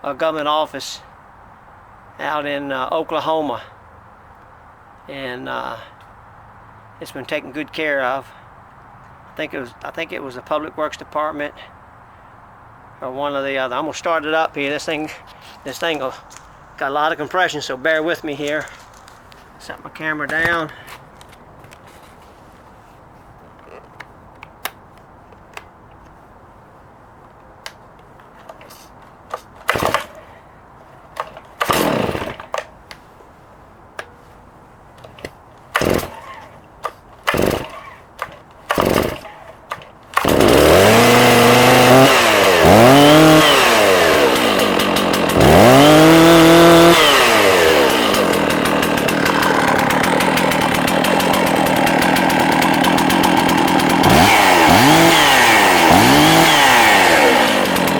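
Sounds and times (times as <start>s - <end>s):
chainsaw starter rope pulls: 14.8s - 20.9s, 28.4s - 30.3s, 31.2s - 32.8s, 35.0s - 57.9s
chainsaw engine revving and running: 29.7s - 30.2s, 31.6s - 32.6s, 35.8s - 36.5s, 37.3s - 38.0s, 38.7s - 39.4s, 40.2s - 57.9s.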